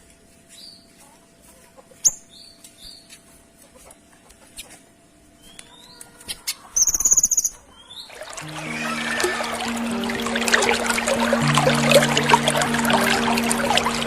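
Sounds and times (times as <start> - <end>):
music: 8.4 - 14.0.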